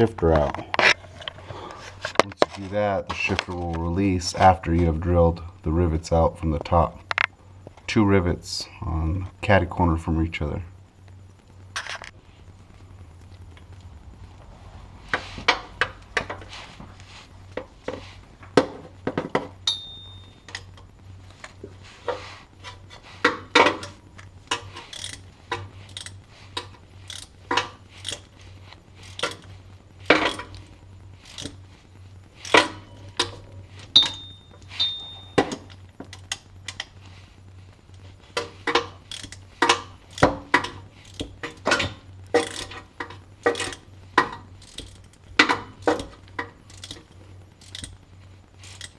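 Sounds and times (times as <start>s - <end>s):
steady low hum: 0.0s - 48.9s
hand tools clicking and clanking: 17.5s - 20.8s, 29.1s - 29.5s, 30.1s - 30.6s, 32.4s - 35.8s, 38.3s - 47.9s.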